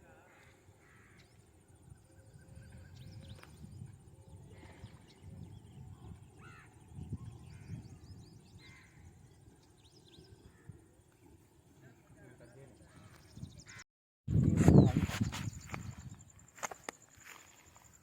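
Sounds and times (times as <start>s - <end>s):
crows cawing: 0.2s - 1.2s
small birds chirping: 0.4s - 13.8s, 14.4s - 18.0s.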